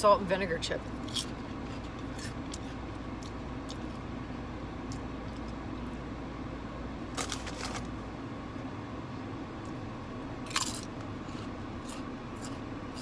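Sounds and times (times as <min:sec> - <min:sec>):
potato chips crunching: 0:01.0 - 0:04.0, 0:07.2 - 0:07.9, 0:10.4 - 0:13.0.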